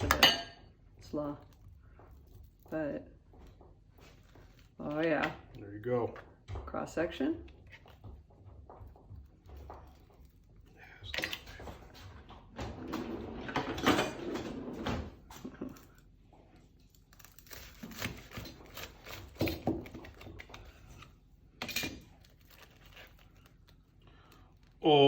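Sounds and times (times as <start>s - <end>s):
kitchenware knocking and scraping: 0.0s - 0.6s, 12.5s - 15.8s.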